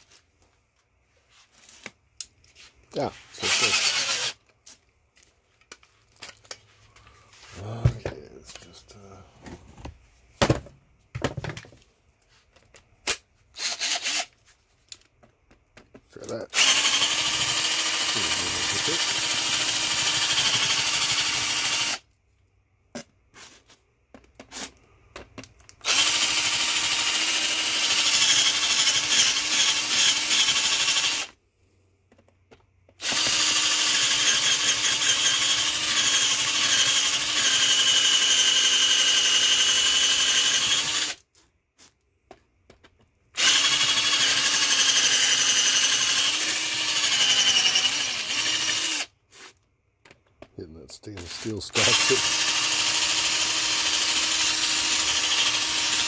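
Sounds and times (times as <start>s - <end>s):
power drill running: 3.4s - 4.4s, 13.6s - 14.3s, 16.5s - 22.0s, 25.8s - 31.4s, 33.0s - 41.2s, 43.4s - 49.1s, 51.2s - 56.0s.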